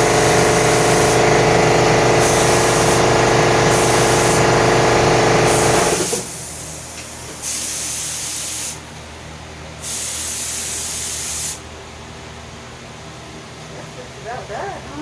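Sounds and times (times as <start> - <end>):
spray paint hissing: 0.0 - 1.3, 2.2 - 4.6, 5.5 - 8.8, 9.8 - 11.6
machine hum: 0.0 - 6.8.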